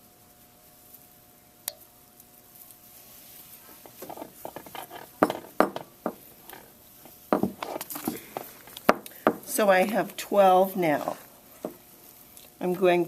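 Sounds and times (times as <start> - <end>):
twine bundles knocking and clattering: 3.8 - 10.0.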